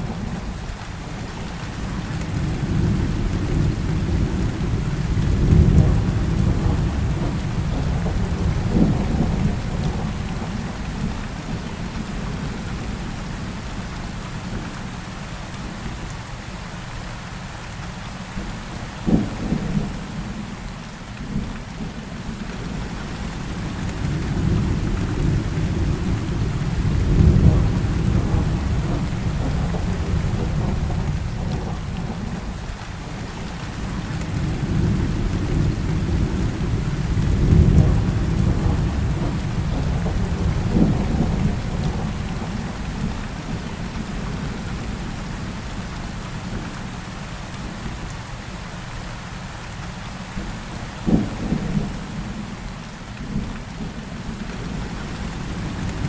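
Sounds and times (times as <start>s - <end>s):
heavy rain falling: 0.0s - 56.0s
rolling thunder: 1.9s - 11.0s, 23.5s - 45.5s
sharp thunder claps: 23.9s - 32.4s, 33.9s - 43.6s.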